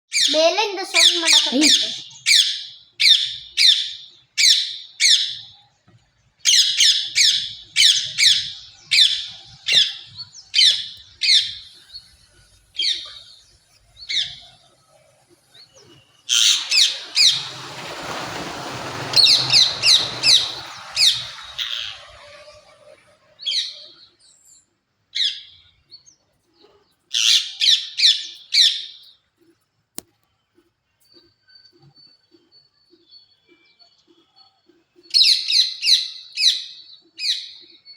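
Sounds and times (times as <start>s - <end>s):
parrot giving shrill calls: 16.3s - 17.5s.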